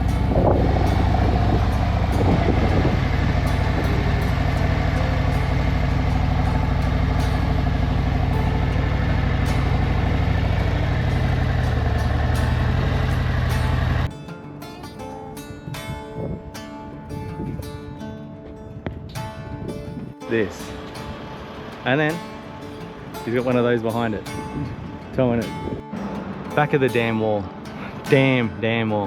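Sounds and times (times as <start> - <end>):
motorcycle engine running: 0.0 - 14.1, 18.7 - 26.8
wind and road noise: 0.0 - 14.1, 15.2 - 29.0.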